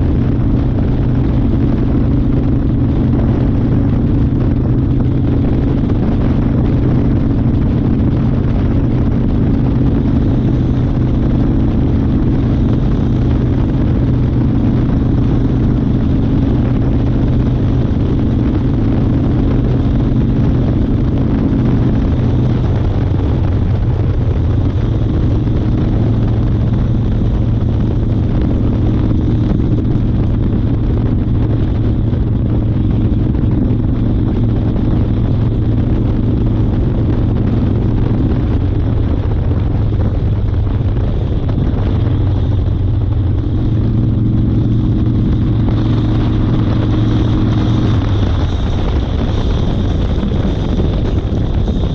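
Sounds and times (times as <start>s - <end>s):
motorcycle engine running: 0.0s - 51.9s
rush of noise: 0.0s - 51.9s.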